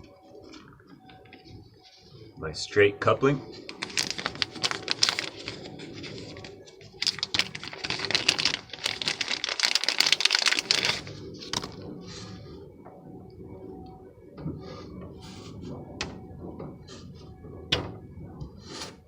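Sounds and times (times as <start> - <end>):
pipe fittings clicking and rattling: 3.6 - 12.0.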